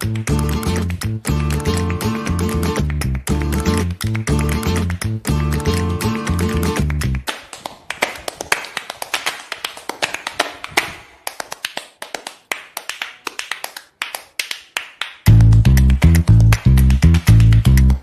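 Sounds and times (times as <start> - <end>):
percussive background music: 0.0 - 7.2, 15.3 - 18.0.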